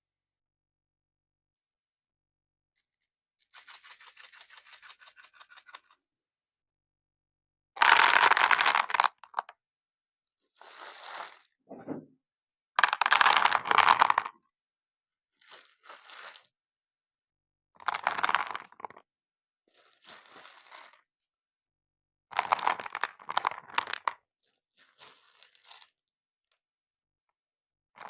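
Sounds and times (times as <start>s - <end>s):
crunching and crinkling: 15.4s - 16.5s, 19.7s - 21.0s, 24.8s - 25.9s.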